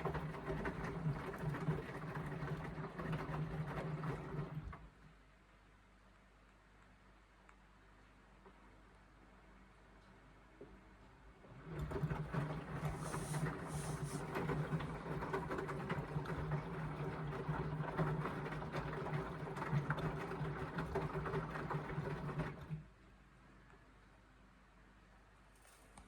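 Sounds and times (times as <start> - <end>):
washing machine motor hum: 0.0 - 5.0, 11.4 - 23.0.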